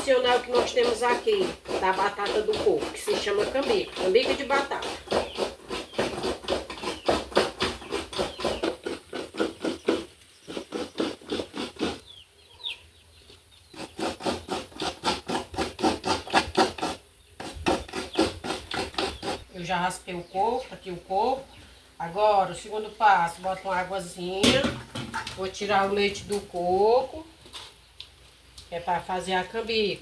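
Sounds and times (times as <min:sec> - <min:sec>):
coconut being scraped: 0:00.0 - 0:12.1, 0:13.7 - 0:19.5.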